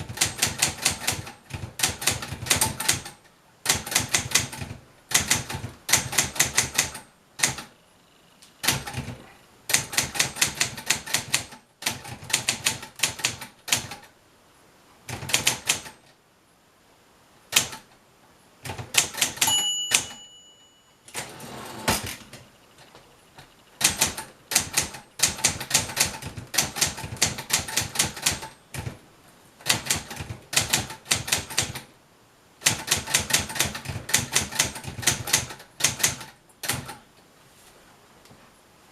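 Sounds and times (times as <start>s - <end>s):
typewriter keys clicking: 0.0s - 7.7s, 8.6s - 14.1s, 15.1s - 16.0s, 17.5s - 17.9s, 18.6s - 20.1s, 23.8s - 29.0s, 29.6s - 31.9s, 32.6s - 37.0s
typewriter bell ringing: 19.4s - 21.4s.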